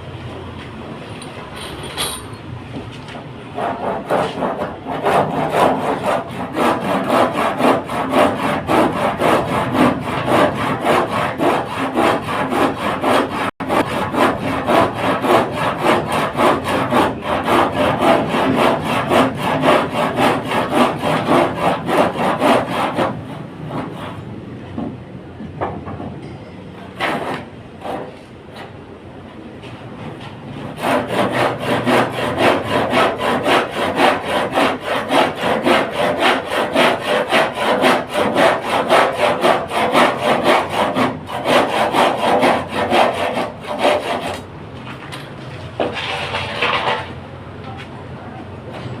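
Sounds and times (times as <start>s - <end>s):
hand saw cutting wood: 3.6s - 24.2s, 27.0s - 28.7s, 30.6s - 44.5s, 45.8s - 47.2s.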